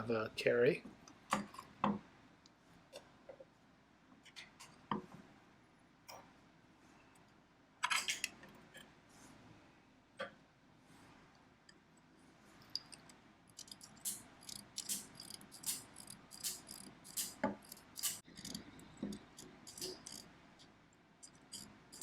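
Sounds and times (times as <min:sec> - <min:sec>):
adding machine metallic clicks: 0:13.5 - 0:20.3.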